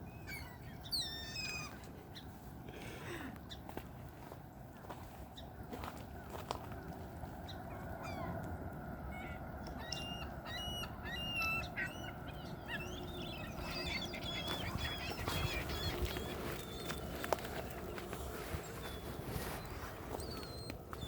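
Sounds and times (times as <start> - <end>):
waterfowl honking: 9.2 - 16.9.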